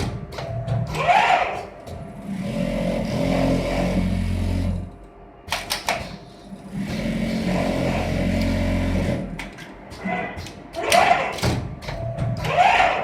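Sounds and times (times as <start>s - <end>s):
sewing machine humming: 2.2s - 5.0s, 6.6s - 9.4s.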